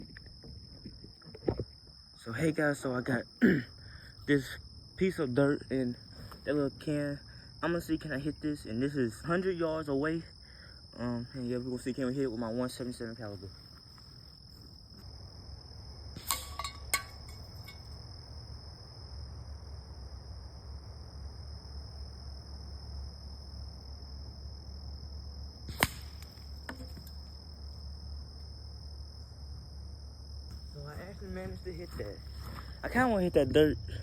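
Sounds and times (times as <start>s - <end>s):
crickets chirping: 0.0s - 34.0s
air rifle shot: 25.7s - 26.2s.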